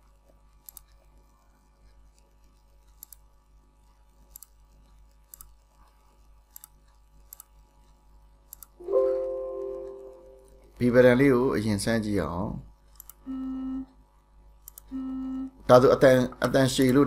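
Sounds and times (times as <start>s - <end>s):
faint mouse clicks: 0.2s - 8.8s, 12.9s - 13.2s, 14.6s - 14.9s.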